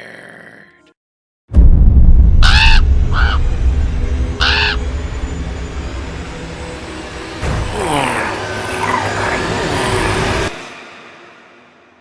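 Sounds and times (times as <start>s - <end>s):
loud low rumble: 1.5s - 10.6s
crow cawing: 2.4s - 3.5s, 4.4s - 4.9s.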